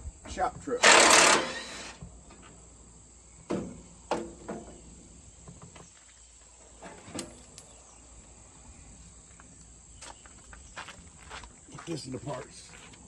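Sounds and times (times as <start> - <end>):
knocks and clunks of car parts: 3.4 - 4.8.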